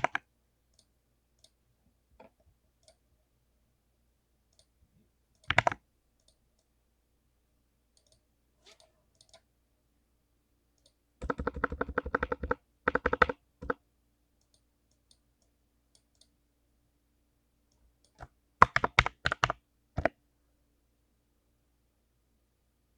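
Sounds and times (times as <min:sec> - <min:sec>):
clicky keyboard typing: 0:00.0 - 0:01.6, 0:05.4 - 0:06.7, 0:08.0 - 0:09.4, 0:10.8 - 0:13.8, 0:18.0 - 0:20.2.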